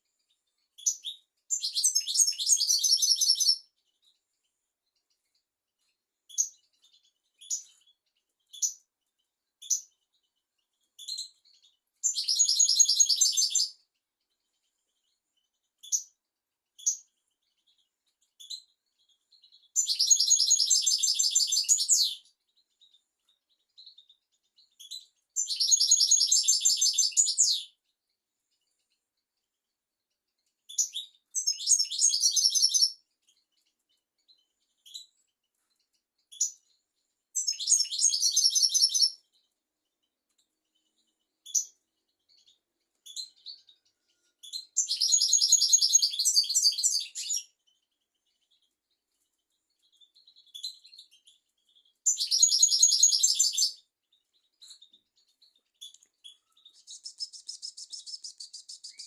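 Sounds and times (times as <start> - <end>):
finch twittering song: 0.0 - 59.0
fast buzzy bird trill: 56.4 - 59.0.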